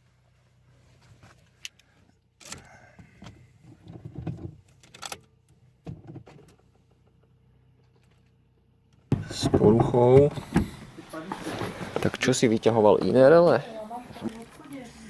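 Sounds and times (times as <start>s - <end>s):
steady low hum: 8.9s - 15.0s
rattling and rustling: 9.1s - 13.2s.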